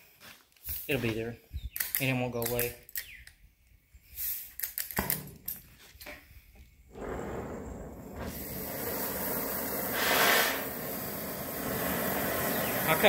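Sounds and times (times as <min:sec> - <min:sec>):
cutting torch hissing: 0:06.9 - 0:13.0.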